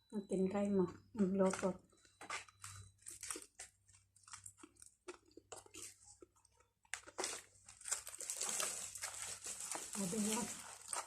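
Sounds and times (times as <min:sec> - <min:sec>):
chewing crispy chicken: 0:03.0 - 0:11.0.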